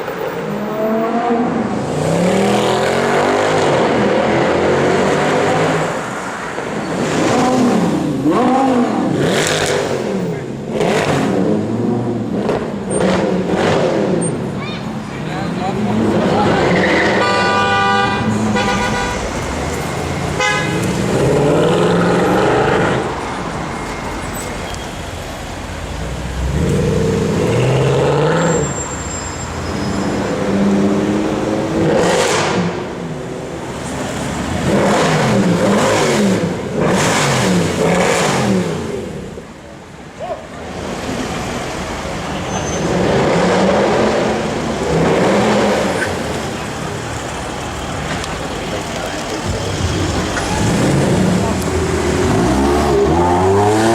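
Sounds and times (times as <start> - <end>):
car engine revving and accelerating: 0.2 - 6.2, 6.9 - 14.5, 15.6 - 23.2, 26.0 - 28.8, 29.8 - 39.4, 40.7 - 47.3, 49.2 - 53.9
car horn toot: 17.0 - 19.4, 20.3 - 20.9
car exhaust revving: 49.2 - 53.9.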